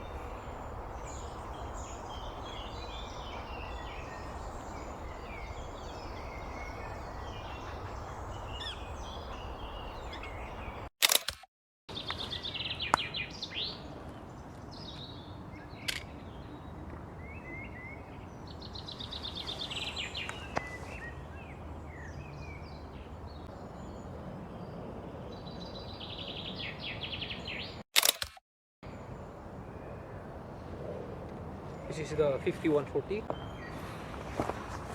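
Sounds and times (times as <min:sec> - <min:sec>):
songbirds chirping and trilling: 0:00.0 - 0:10.9, 0:11.9 - 0:27.8, 0:28.8 - 0:34.9
sharp clicks: 0:11.0 - 0:11.5, 0:28.0 - 0:28.4.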